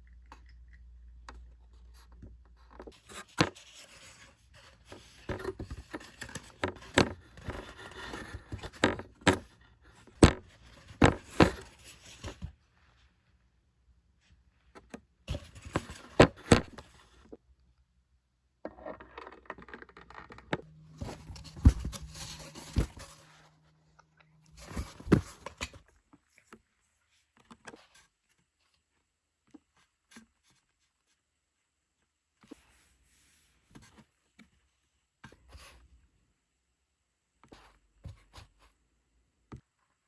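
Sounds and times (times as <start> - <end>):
rustling: 20.6 - 23.6, 24.4 - 25.8
scraping: 20.6 - 25.8
low hum: 20.6 - 25.9.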